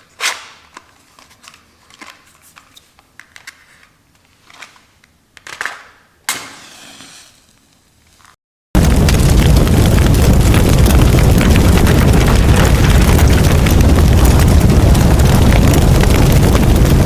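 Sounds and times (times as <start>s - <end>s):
dense crackling: 8.8s - 17.0s
harsh rumbling noise: 8.8s - 17.0s.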